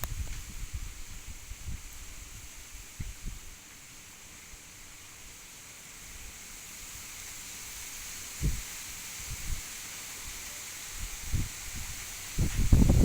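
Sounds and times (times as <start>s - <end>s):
wind buffeting microphone: 0.0s - 3.5s, 8.4s - 9.6s, 11.0s - 13.0s
strong wind hissing: 0.0s - 5.4s, 6.0s - 13.0s.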